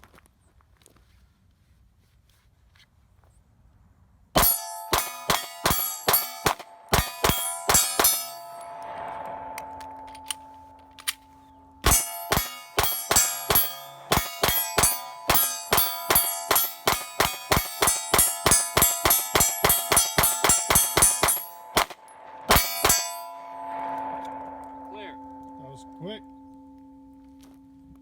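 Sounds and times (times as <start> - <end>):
pistol shots: 4.4 - 8.4, 11.8 - 23.2
steel target ringing: 4.4 - 27.8.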